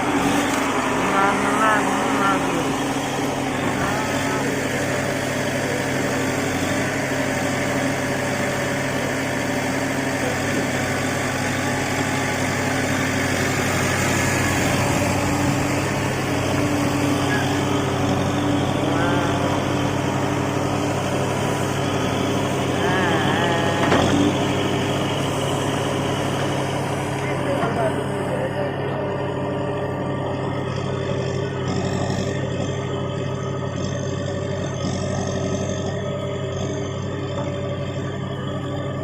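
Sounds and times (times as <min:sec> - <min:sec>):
diesel engine running: 0:00.0 - 0:39.0.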